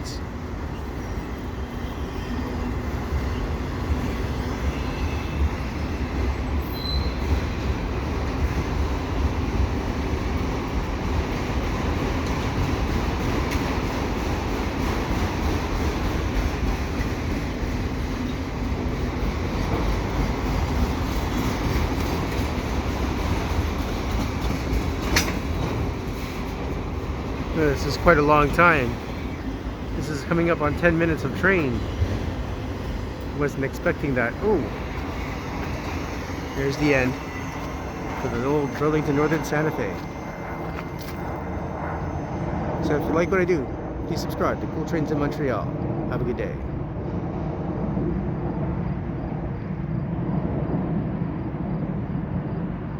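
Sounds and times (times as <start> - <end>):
high wheel squeal: 0.0 - 7.8, 19.6 - 45.6
train wheels rumbling on rail: 0.0 - 52.9.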